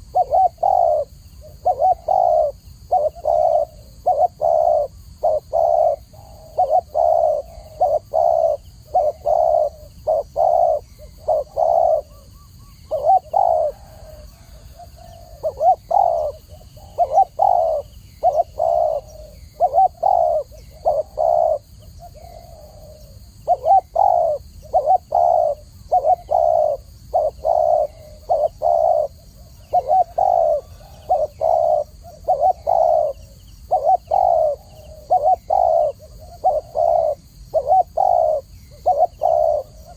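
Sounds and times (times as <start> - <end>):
dove cooing: 0.0 - 39.9.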